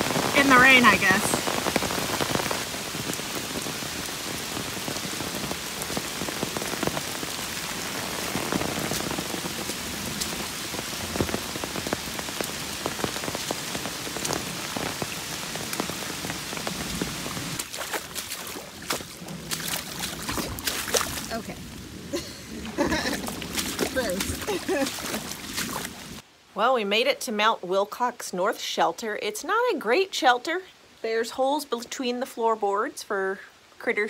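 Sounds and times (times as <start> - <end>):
raindrops ticking close by: 0.0 - 26.2
steady rain hiss: 0.0 - 34.0.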